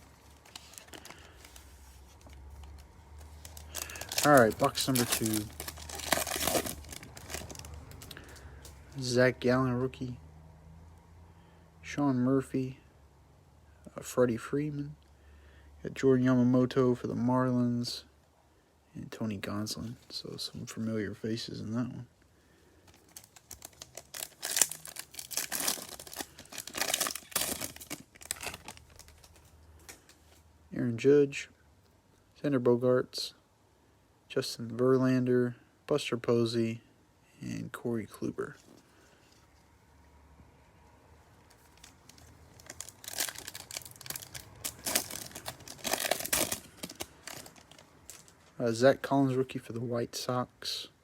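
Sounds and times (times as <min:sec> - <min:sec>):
foil wrapper crinkling and tearing: 0:00.0 - 0:08.4, 0:22.8 - 0:30.1, 0:41.4 - 0:48.5.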